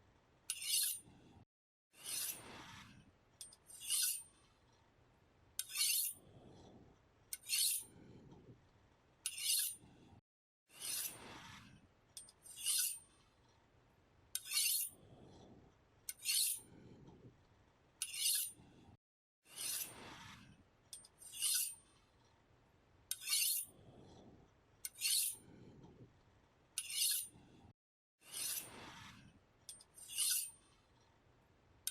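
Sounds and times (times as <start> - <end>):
knife blade scraping on sharpener: 0.5 - 1.0, 2.0 - 2.4, 3.4 - 4.3, 5.6 - 6.2, 7.3 - 7.9, 9.2 - 9.8, 10.8 - 11.2, 12.2 - 13.0, 14.4 - 15.0, 16.1 - 16.6, 18.0 - 18.6, 19.5 - 20.0, 21.0 - 21.8, 23.1 - 23.7, 24.8 - 25.4, 26.8 - 27.3, 28.2 - 28.8, 29.7 - 30.6.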